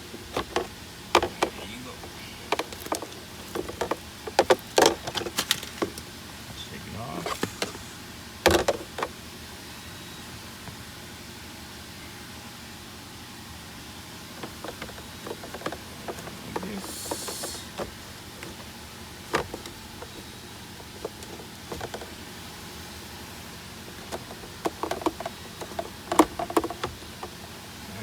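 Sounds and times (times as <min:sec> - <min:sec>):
filter rustling: 0:00.0 - 0:06.2, 0:14.3 - 0:27.6.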